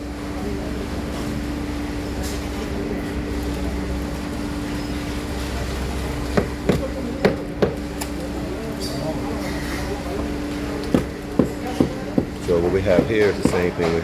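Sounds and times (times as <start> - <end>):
sharp knocks: 6.4 - 7.9, 10.9 - 13.8.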